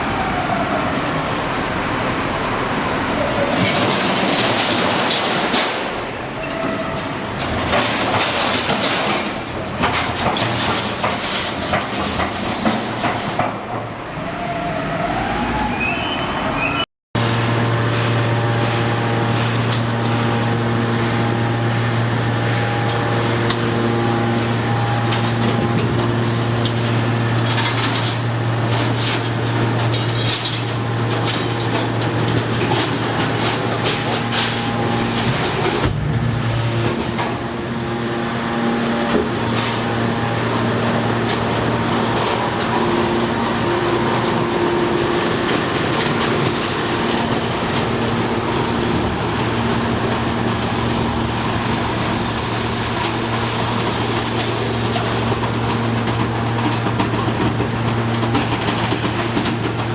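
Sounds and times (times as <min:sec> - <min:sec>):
scrap metal clattering: 0:03.4 - 0:13.8, 0:24.7 - 0:37.6.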